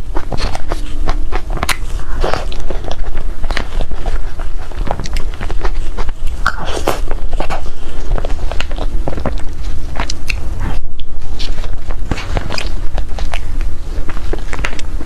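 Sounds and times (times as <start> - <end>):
biting and chewing cake: 0.0 - 15.0.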